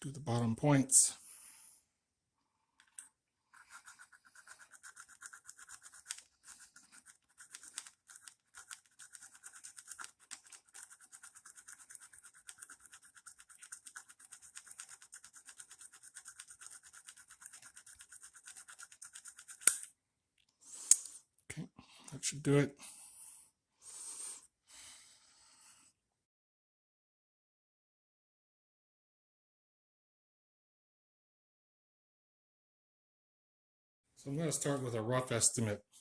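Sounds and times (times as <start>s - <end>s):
file rasping on metal contacts: 3.5s - 19.9s.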